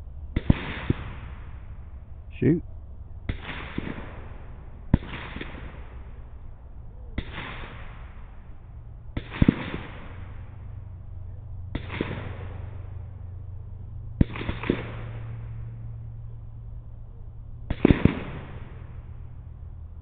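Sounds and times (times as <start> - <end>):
steady low hum: 0.0 - 20.0
gunshots echoing: 0.3 - 2.6, 3.2 - 6.6, 7.2 - 13.5, 14.2 - 16.0, 17.7 - 19.5.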